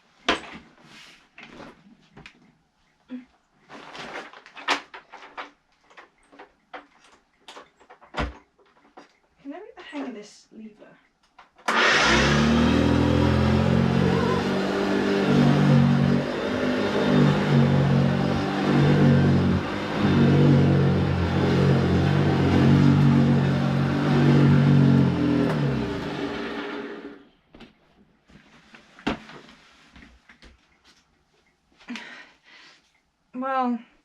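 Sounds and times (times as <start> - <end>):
vacuum cleaner running: 11.7 - 27.2.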